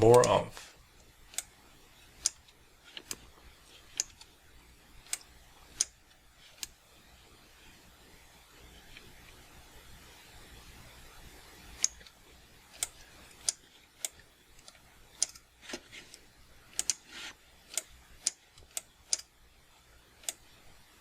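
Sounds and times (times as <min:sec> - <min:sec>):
computer mouse and key clicks: 0:01.0 - 0:01.6, 0:02.2 - 0:04.3, 0:05.0 - 0:06.8, 0:11.8 - 0:19.3, 0:20.2 - 0:20.5.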